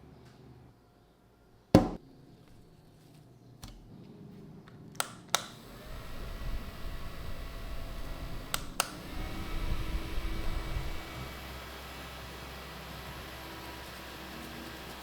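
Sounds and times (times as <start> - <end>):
sharp knock: 1.8 - 2.0
small fan motor running: 5.5 - 15.0.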